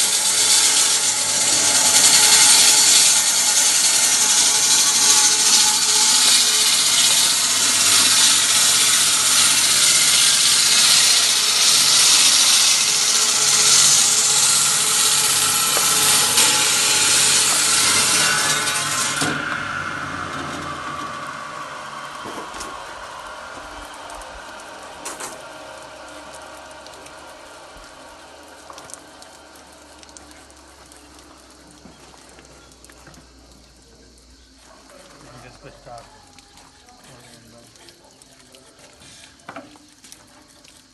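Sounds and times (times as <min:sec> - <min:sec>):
saw blade spinning down: 0:00.0 - 0:30.0
electric saw grinding stone: 0:00.0 - 0:33.4.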